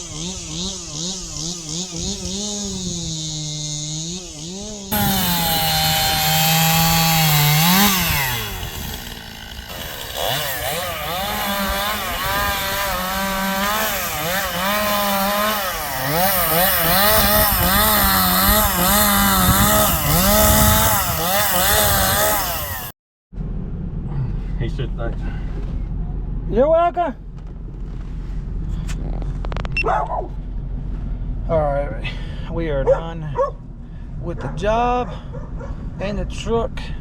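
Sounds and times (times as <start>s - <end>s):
chainsaw cutting wood: 0.0s - 22.9s.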